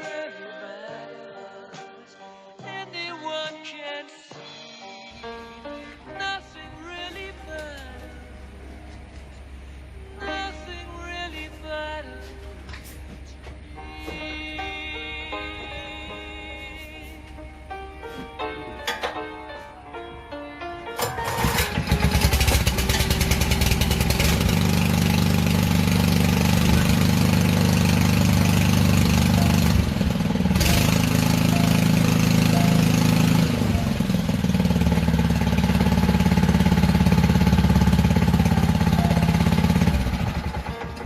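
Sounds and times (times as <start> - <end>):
lawn mower engine running: 21.0 - 41.0.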